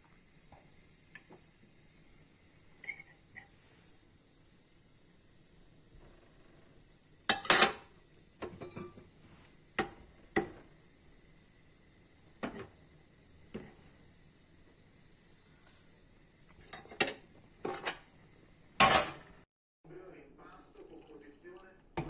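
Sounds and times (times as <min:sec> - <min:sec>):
dish and utensil clinking: 0:08.4 - 0:09.1, 0:18.8 - 0:19.3.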